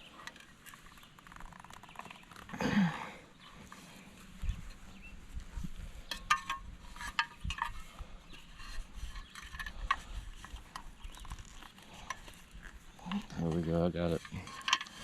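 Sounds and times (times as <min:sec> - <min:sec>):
pliers clicking and scraping metal: 0:09.1 - 0:15.0.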